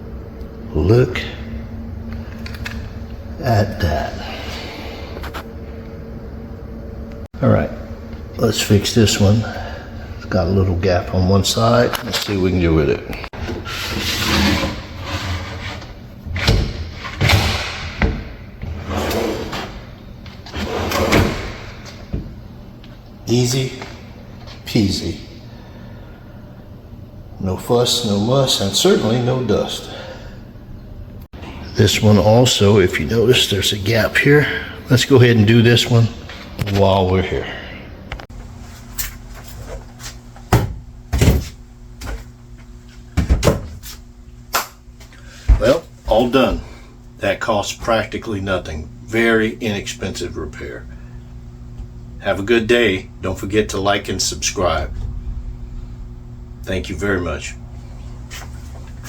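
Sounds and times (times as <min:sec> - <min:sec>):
drawer sliding on slides: 0:13.5 - 0:17.8, 0:18.7 - 0:21.8.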